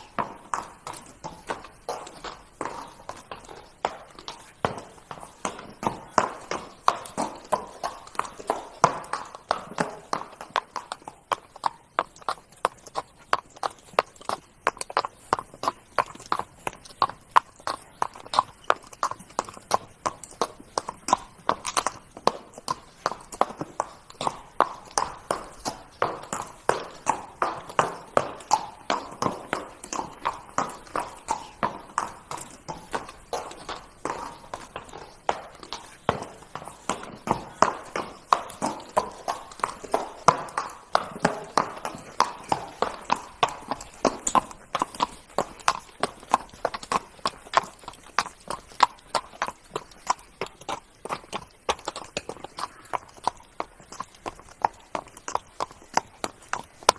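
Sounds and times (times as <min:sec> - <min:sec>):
horse hooves trotting: 0:00.0 - 0:56.9.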